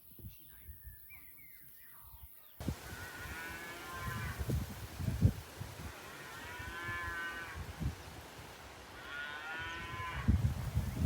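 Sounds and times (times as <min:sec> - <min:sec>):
faint birds chirping: 0:00.0 - 0:02.9.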